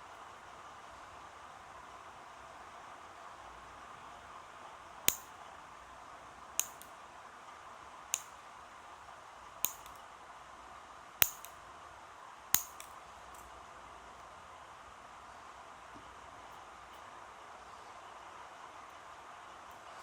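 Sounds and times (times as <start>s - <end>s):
background hiss: 0.0s - 20.0s
nail clipper snaps: 5.1s - 5.4s, 6.6s - 7.0s, 8.1s - 8.4s, 9.6s - 10.0s, 11.2s - 11.6s, 12.6s - 12.9s
small clicks: 6.6s - 7.0s, 9.6s - 10.0s, 12.6s - 13.5s.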